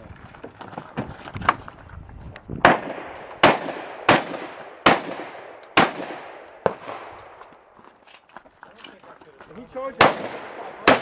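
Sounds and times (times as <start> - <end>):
sharp crack: 2.6 - 7.2, 10.0 - 11.0
echoing gunshots: 2.6 - 7.4, 9.9 - 11.0.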